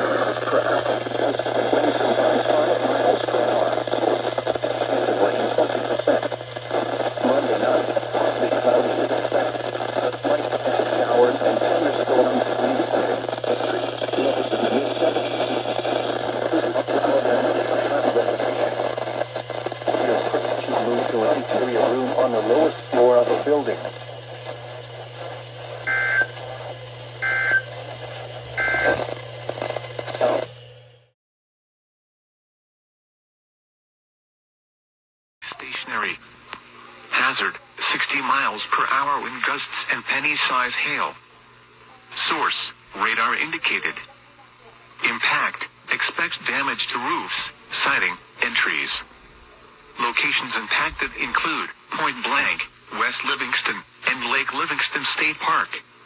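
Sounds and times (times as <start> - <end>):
garbled voice on radio: 0.0 - 25.3, 35.4 - 41.2, 42.0 - 55.9
radio static: 0.0 - 30.8, 35.4 - 56.0
steady low hum: 0.0 - 31.1, 35.4 - 56.0
two-tone warbling data chirps: 25.9 - 26.3, 27.2 - 27.6, 28.6 - 29.0.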